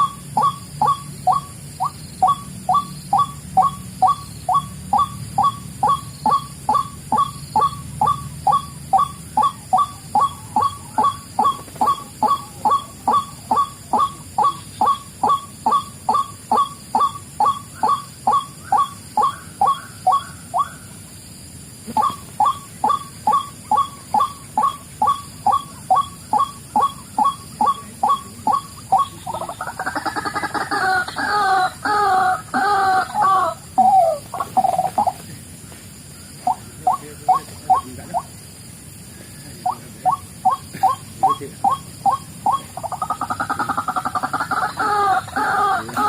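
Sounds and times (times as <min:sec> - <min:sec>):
waterhen calling: 0:00.0 - 0:21.0, 0:21.9 - 0:35.3, 0:36.2 - 0:38.4, 0:39.6 - 0:46.0
harsh bird call: 0:39.7 - 0:46.0.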